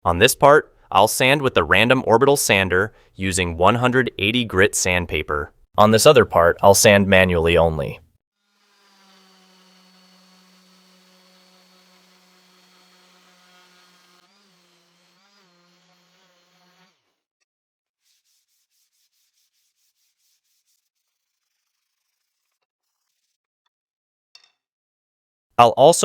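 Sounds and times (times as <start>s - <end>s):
orbital sander whining: 8.4s - 17.1s
sandpaper rubbing on wood: 8.5s - 17.2s, 18.0s - 23.4s.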